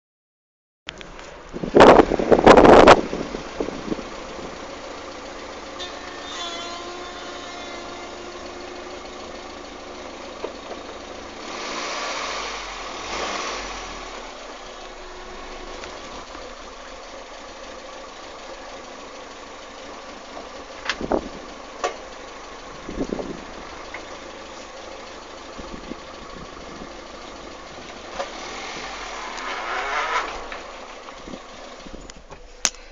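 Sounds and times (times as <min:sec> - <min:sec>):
car engine running: 0:00.9 - 0:32.9
squeak: 0:05.8 - 0:08.2.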